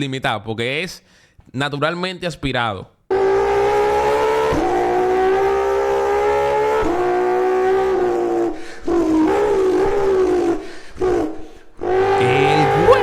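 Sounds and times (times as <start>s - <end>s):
car engine wailing at high revs: 3.1s - 13.0s.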